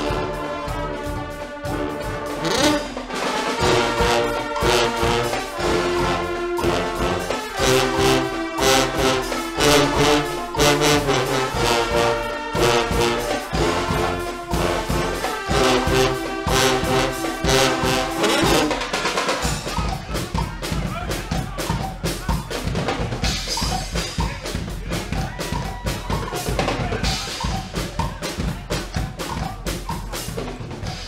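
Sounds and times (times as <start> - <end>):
trumpets and trombones blaring: 0.0 - 22.5
driving drum beat: 0.0 - 31.0.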